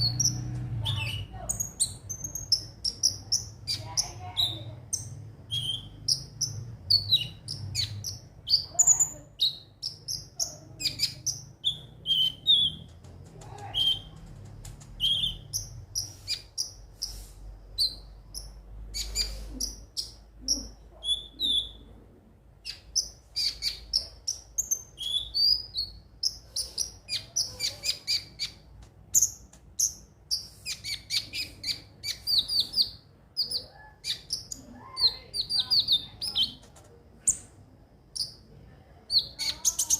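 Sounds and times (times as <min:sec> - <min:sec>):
bird chirping and twittering: 0:00.0 - 0:22.0, 0:22.6 - 0:38.5, 0:39.1 - 0:39.9.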